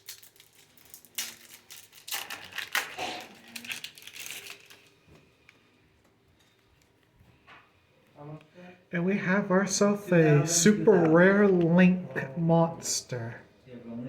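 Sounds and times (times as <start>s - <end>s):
foil wrapper crinkling and tearing: 0.0s - 5.0s.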